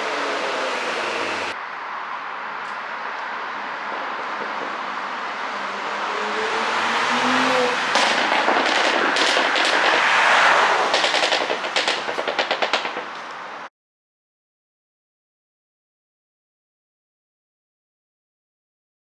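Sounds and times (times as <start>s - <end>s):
car exhaust revving: 0.0s - 1.6s, 4.1s - 13.6s
exhaust crackling and popping: 6.2s - 13.7s.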